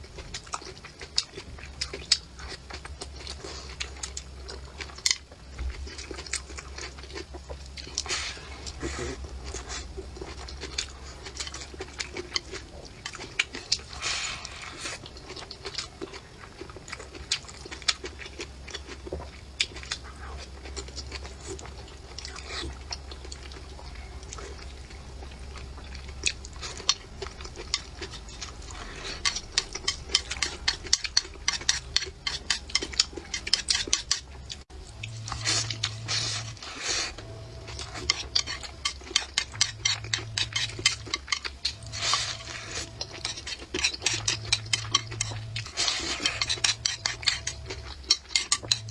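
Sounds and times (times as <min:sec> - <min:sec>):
low steady hum: 0:00.0 - 0:48.9
person chewing: 0:00.0 - 0:48.9
utensils clicking against dishes: 0:26.6 - 0:34.4, 0:37.6 - 0:48.9.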